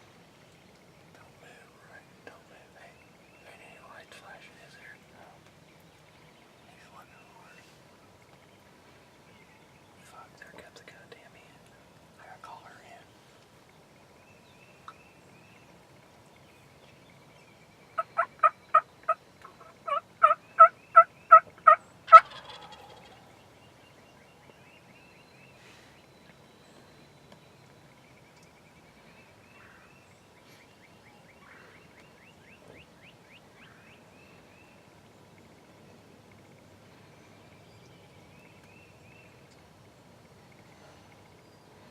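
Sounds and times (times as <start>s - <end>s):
turkey yelps: 18.0s - 18.8s, 19.6s - 23.2s.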